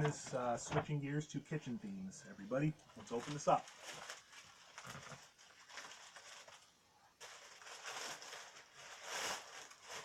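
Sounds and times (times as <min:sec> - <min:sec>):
paper rustling and crinkling: 0:03.0 - 0:10.0.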